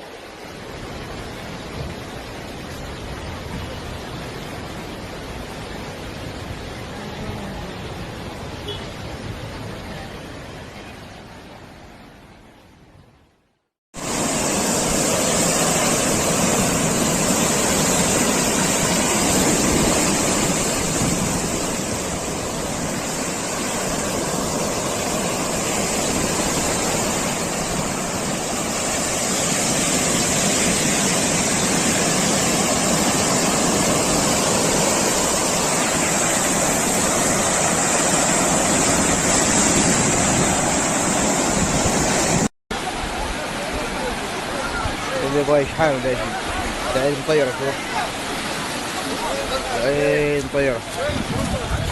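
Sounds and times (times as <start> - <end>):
wind rushing: 14.0 - 42.5, 50.6 - 51.9
driving rain: 14.0 - 51.9.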